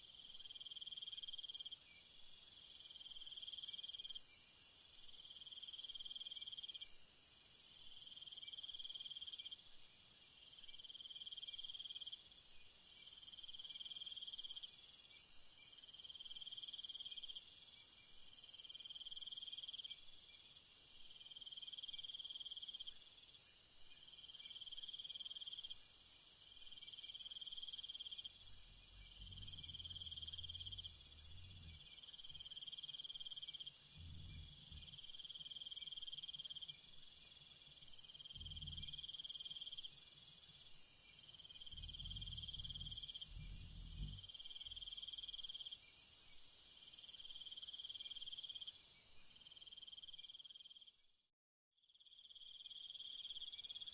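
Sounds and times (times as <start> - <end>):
lower insect trill: 0.0 - 51.2, 51.8 - 53.9
crickets trilling: 24.0 - 50.8.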